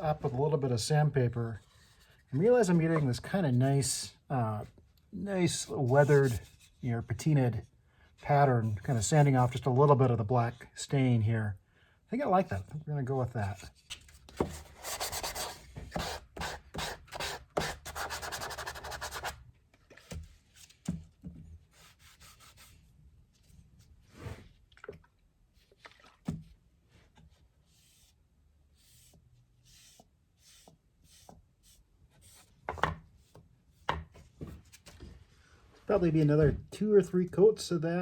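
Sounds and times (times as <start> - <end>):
hand rubbing on wooden box: 5.5 - 6.8.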